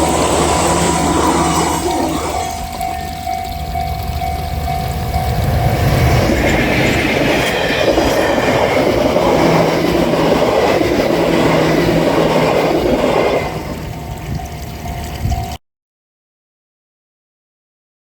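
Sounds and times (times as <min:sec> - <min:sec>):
level crossing bell ringing: 0:00.0 - 0:06.0
train wheels running over rails: 0:00.0 - 0:15.5.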